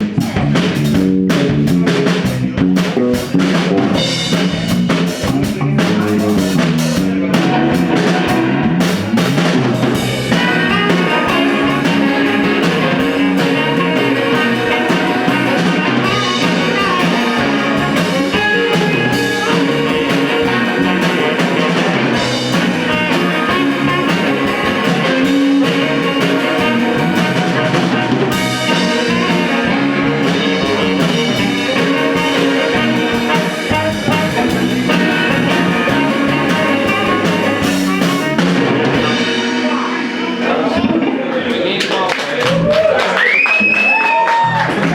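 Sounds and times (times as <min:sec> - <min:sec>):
bass guitar notes: 0:00.0 - 0:41.8, 0:42.4 - 0:44.9
drum kit playing: 0:00.0 - 0:44.9
guitar sustained notes: 0:06.3 - 0:41.5.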